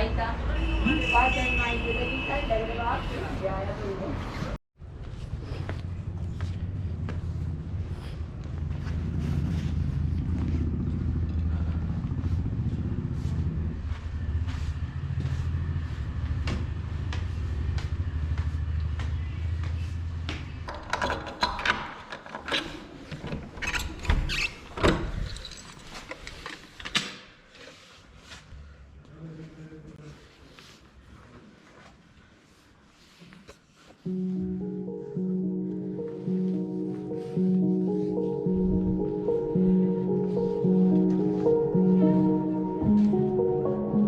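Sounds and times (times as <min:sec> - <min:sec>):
low engine hum: 0:04.8 - 0:20.7.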